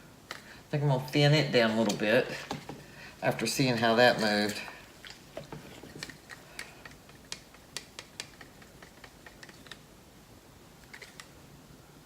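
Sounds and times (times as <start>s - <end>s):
paint stirred in plastic cup: 1.7s - 9.8s.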